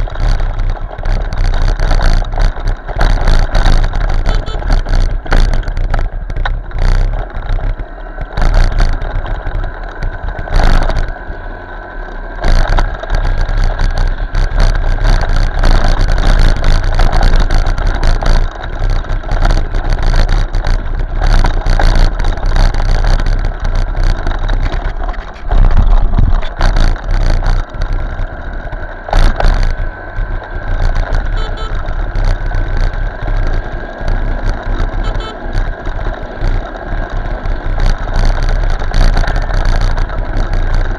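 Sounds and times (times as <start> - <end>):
motorcycle engine running: 0.0 - 40.9
road and wind noise: 0.0 - 40.9
wind buffeting microphone: 12.6 - 40.9.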